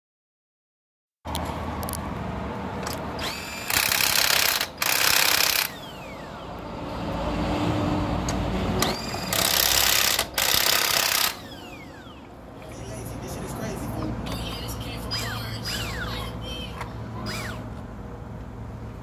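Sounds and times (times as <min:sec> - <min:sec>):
pneumatic impact wrench hammering: 0:02.8 - 0:06.2, 0:08.8 - 0:12.2, 0:17.2 - 0:17.6.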